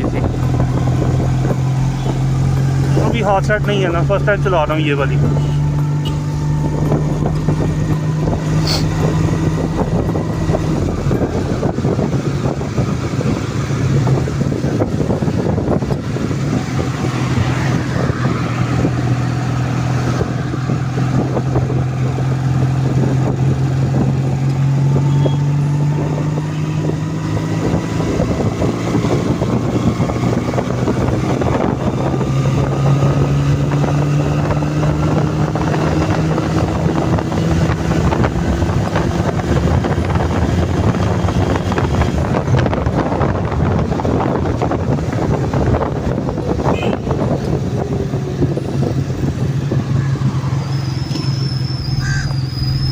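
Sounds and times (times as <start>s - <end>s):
motorcycle engine running: 0.0s - 51.3s
wind buffeting microphone: 0.0s - 51.4s.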